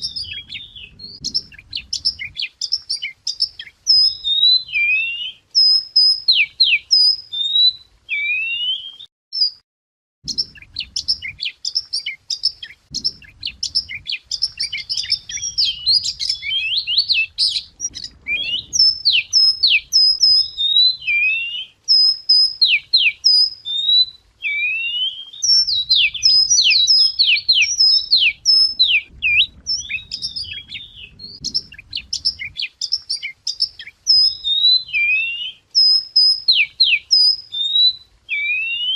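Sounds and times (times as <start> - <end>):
faint low rumble: 0.0 - 2.4, 12.8 - 20.0, 25.7 - 32.7
wagtail singing whistled song: 0.0 - 9.6, 10.3 - 38.9.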